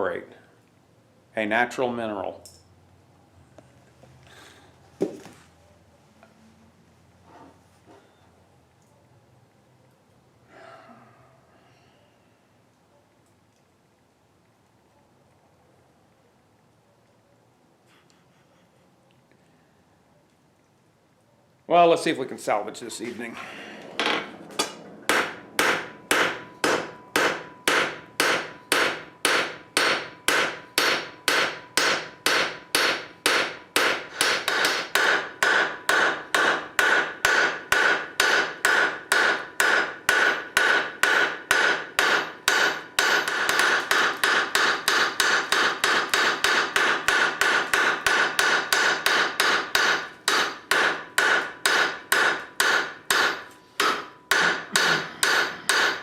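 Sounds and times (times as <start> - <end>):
hammer striking steel on anvil: 24.1 - 56.0.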